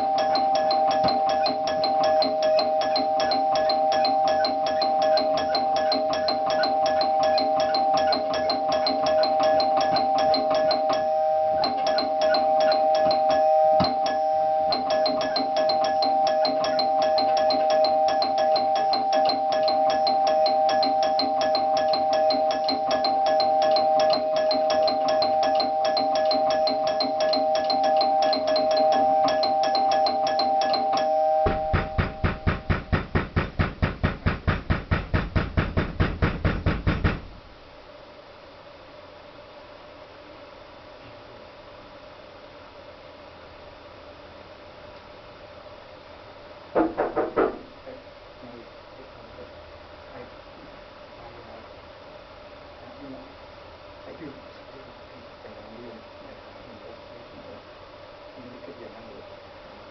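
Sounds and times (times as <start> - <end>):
doorbell ringing: 0.0 - 33.0
rapid pounding: 31.5 - 37.4.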